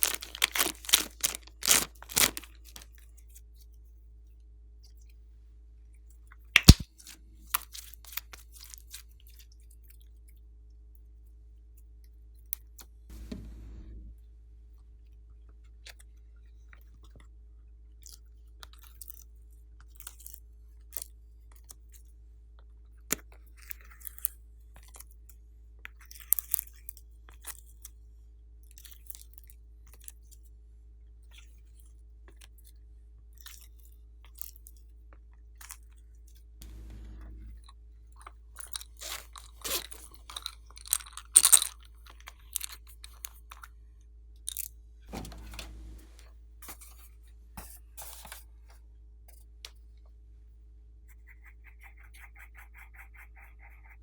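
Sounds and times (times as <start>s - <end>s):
slime being squeezed: 0.0s - 2.8s, 6.6s - 6.8s
crackles pops and clicks: 0.0s - 2.9s, 6.6s - 6.9s
low steady hum: 13.1s - 14.3s, 36.6s - 37.7s, 44.8s - 47.7s.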